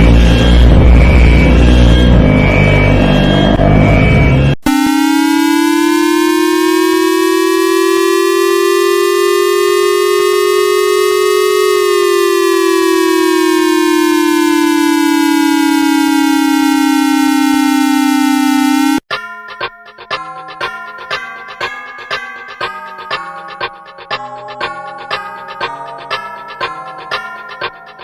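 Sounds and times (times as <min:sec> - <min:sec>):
electronic siren wail: 0:00.0 - 0:19.0.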